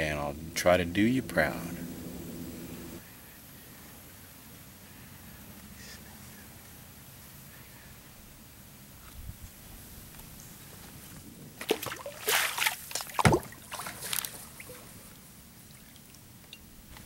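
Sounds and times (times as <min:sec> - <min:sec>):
kayak paddle splashing water: 0:11.6 - 0:15.0.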